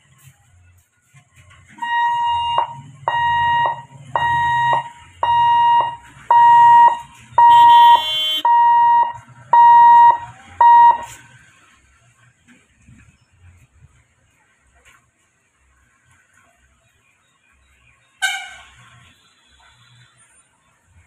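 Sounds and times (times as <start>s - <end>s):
level-crossing alarm hoots: 1.8s - 11.1s.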